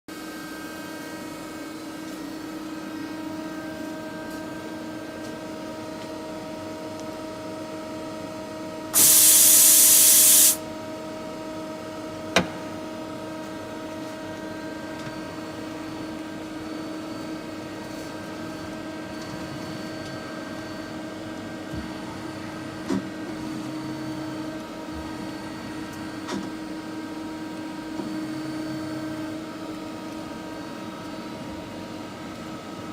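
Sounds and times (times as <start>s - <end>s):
loud hiss: 9.0s - 10.6s.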